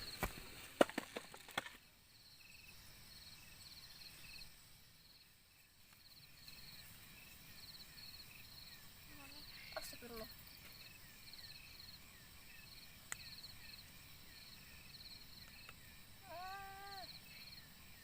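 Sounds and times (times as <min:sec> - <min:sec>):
insects chirping in trills: 0:00.0 - 0:18.0.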